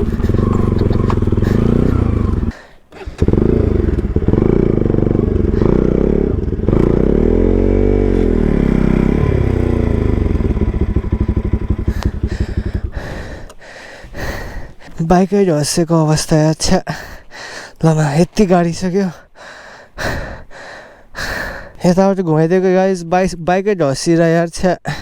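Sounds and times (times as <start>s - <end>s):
motorcycle engine revving: 0.0s - 13.6s.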